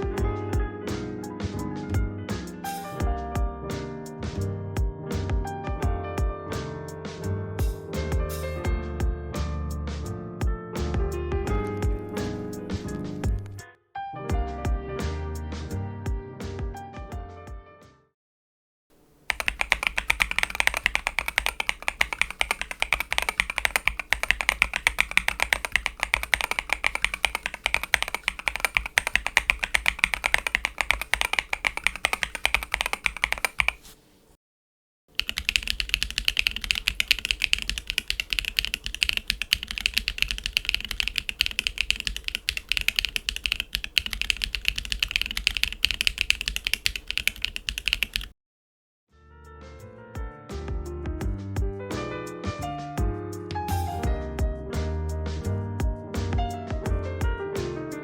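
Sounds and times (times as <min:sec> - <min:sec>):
brighter thinner keyboard typing: 0:13.2 - 0:13.6, 0:19.0 - 0:34.3, 0:35.2 - 0:48.3
mechanical keyboard typing: 0:13.2 - 0:13.6, 0:19.0 - 0:34.3, 0:35.2 - 0:48.3.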